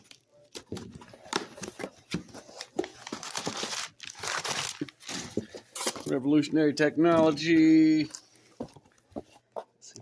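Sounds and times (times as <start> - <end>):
packing paper crinkling: 1.2 - 6.1.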